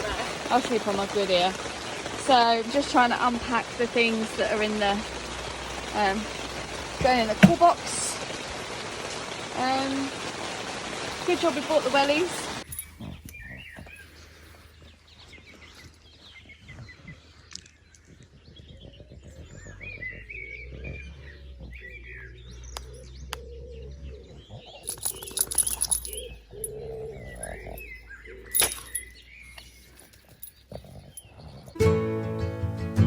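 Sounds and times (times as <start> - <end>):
birds chirping: 0.0 - 9.0, 11.3 - 31.9.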